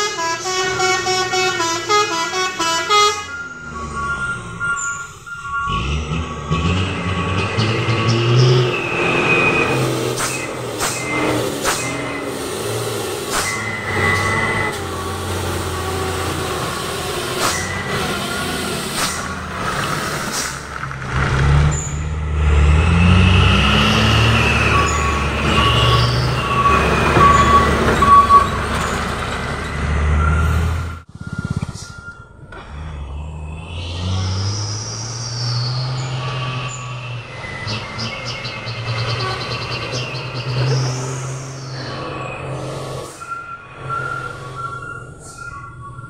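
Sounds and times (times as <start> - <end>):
horn playing short tones: 0.0 - 3.6
heavy vehicle engine revving: 0.0 - 46.0.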